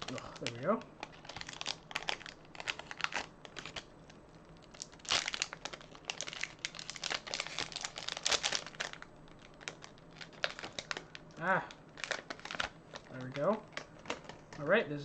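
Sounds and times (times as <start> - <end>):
wrapping paper crinkling and tearing: 0.0 - 3.9, 4.6 - 14.7.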